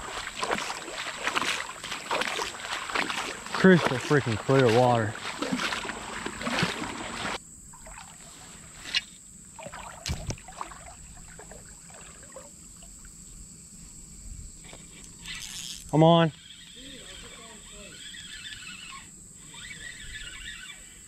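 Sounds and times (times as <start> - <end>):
water trickling: 0.0 - 8.7, 9.5 - 13.2
creek water splashing: 0.0 - 13.2.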